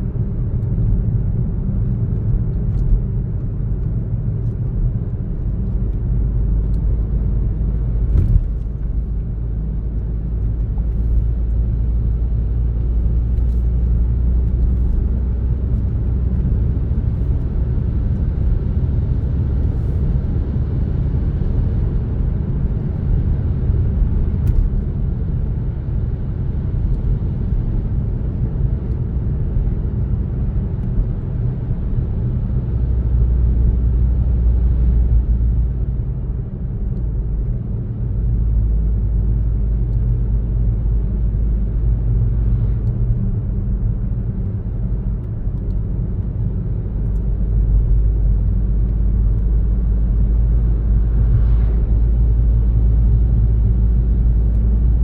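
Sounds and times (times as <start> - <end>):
car engine and tyres rumbling: 0.0 - 55.0.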